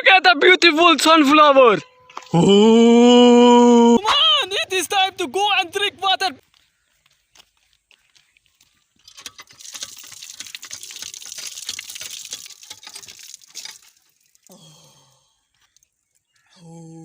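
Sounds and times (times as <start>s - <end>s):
water gushing and splashing: 9.2s - 14.8s.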